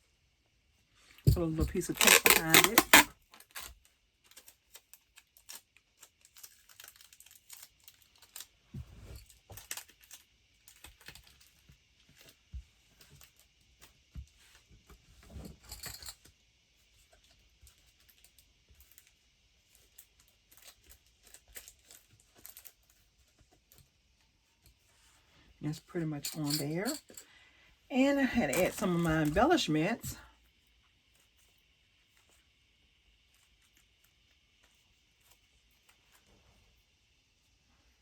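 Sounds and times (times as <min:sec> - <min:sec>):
tape and paper handling noises: 0:01.3 - 0:13.4.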